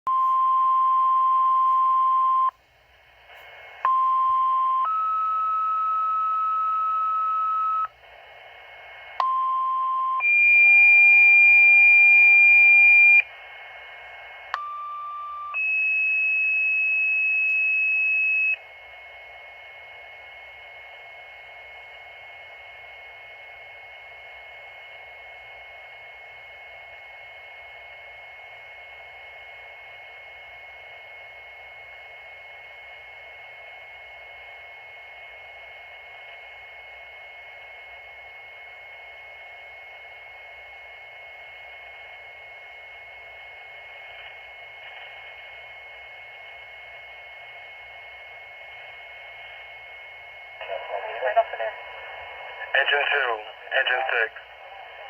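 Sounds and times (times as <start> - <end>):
radio hiss: 2.9 - 3.8, 7.8 - 9.2, 9.9 - 14.5, 43.7 - 47.2, 48.6 - 49.9, 50.5 - 55.0
steady radio tone: 3.2 - 18.6, 43.1 - 55.0
two-tone paging tones: 3.8 - 7.9.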